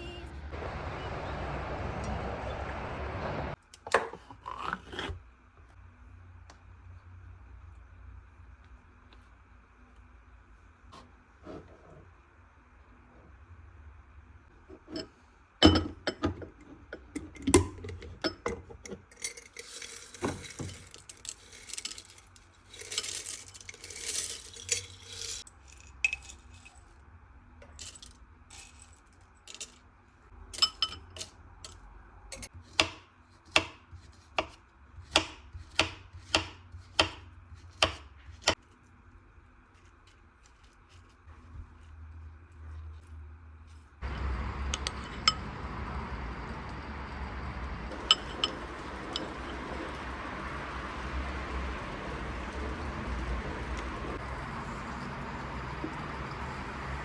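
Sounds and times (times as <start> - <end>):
dishes and utensils clinking: 14.7 - 25.5, 30.6 - 32.5, 47.9 - 49.7.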